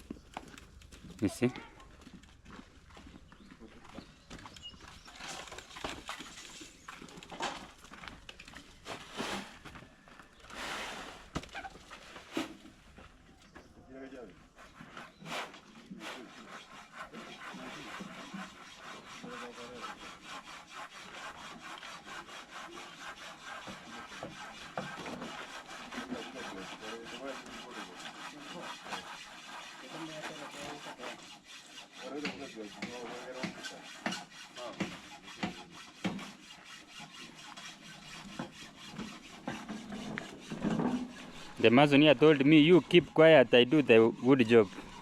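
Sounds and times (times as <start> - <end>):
hand saw cutting wood: 5.0 - 9.8, 14.4 - 45.0.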